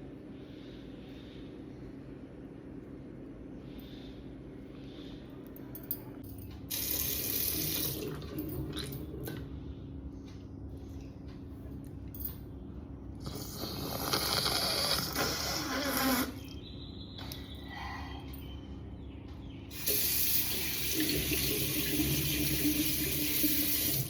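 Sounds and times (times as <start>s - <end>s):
person blowing nose: 13.6s - 16.4s.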